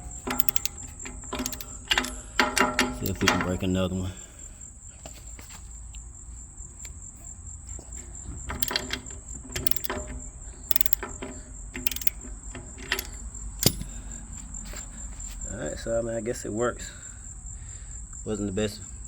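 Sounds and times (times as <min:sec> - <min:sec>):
ratchet clicking and clanking: 0:00.0 - 0:03.8, 0:08.5 - 0:14.0
insects chirping: 0:00.0 - 0:19.0.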